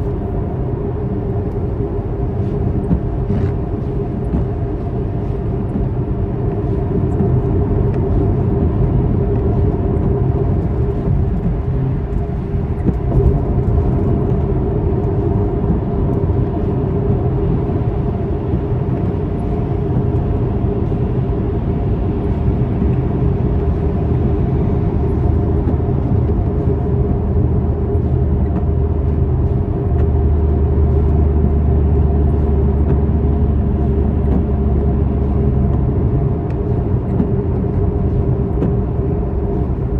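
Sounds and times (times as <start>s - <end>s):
car engine running: 0.0s - 39.9s.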